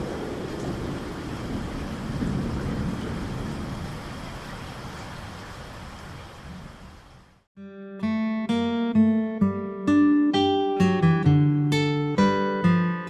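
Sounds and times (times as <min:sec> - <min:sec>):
low rolling thunder: 0:00.0 - 0:07.0
steady rain: 0:00.0 - 0:07.5.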